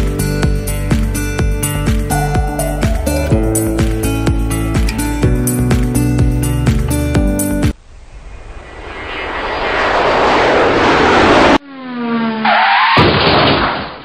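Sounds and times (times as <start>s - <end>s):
rushing engine noise: 7.6s - 12.8s
rising engine note: 7.8s - 12.5s
engine tone falling in pitch: 7.8s - 12.9s.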